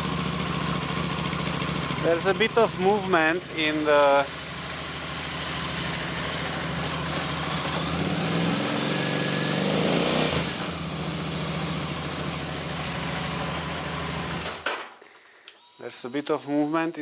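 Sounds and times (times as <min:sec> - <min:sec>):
motorcycle engine idling: 0:00.0 - 0:14.6.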